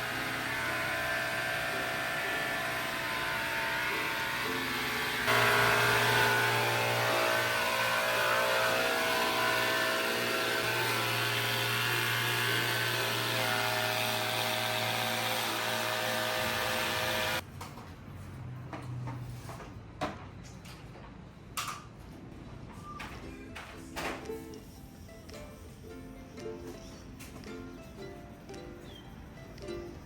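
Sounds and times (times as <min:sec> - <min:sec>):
machine humming: 0:00.0 - 0:17.4.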